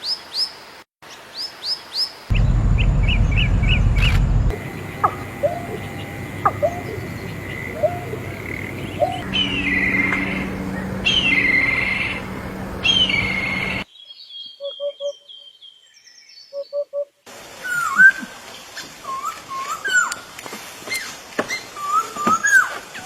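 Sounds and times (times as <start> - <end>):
noisy background: 2.3 - 13.8
high trilling bird calls: 2.3 - 15.6
birds chirping and whistling: 2.3 - 16.8.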